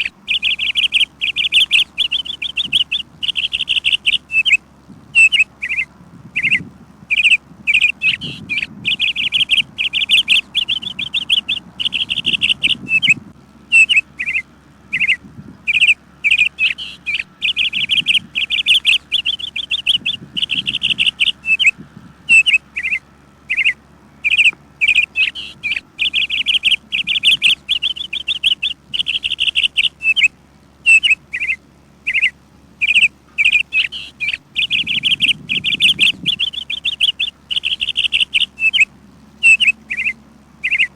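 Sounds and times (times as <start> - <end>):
songbirds chirping: 0.0 - 40.9.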